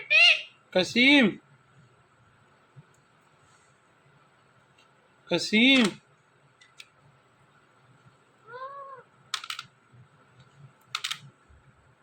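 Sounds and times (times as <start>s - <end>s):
parrot meow-like call: 8.5s - 9.0s.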